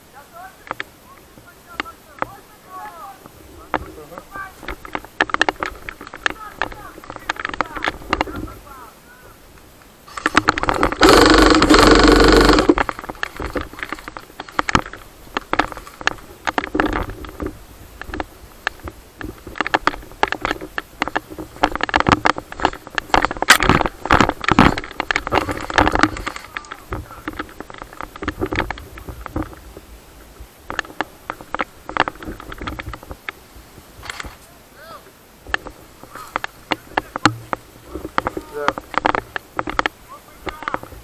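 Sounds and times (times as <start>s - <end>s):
airsoft rifle full-auto burst: 10.8s - 12.8s
movement through dry brush: 35.3s - 41.0s.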